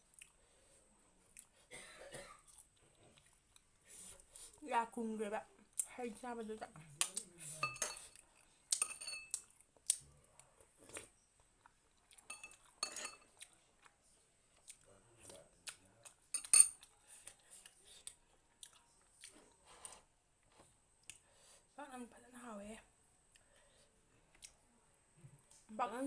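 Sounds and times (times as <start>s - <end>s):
chewing: 0.0s - 0.6s, 1.2s - 1.6s, 2.4s - 4.6s, 7.0s - 21.3s, 23.3s - 24.6s
utensils clinking on dishes: 7.6s - 8.2s, 8.8s - 9.4s, 12.3s - 13.3s, 16.3s - 16.8s.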